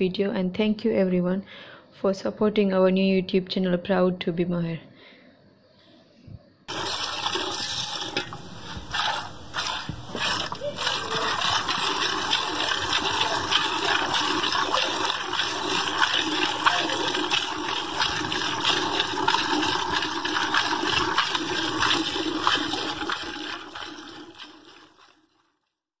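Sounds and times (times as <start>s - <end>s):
water splashing and running: 6.7s - 25.4s.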